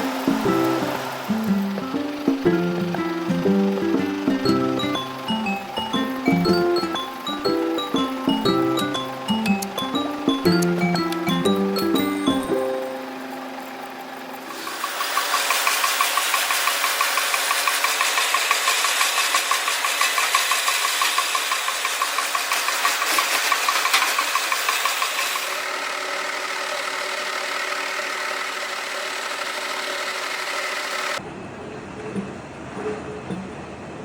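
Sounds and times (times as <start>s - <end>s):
lathe machining steel: 0.0s - 6.3s, 12.1s - 31.2s.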